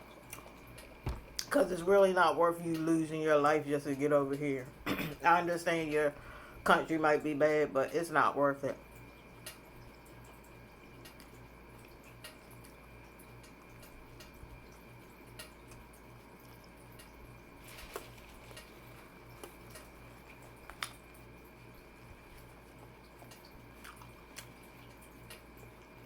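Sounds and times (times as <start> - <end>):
close-miked chewing: 0.0 - 1.6, 9.3 - 26.0
faint steady hum: 0.0 - 26.0.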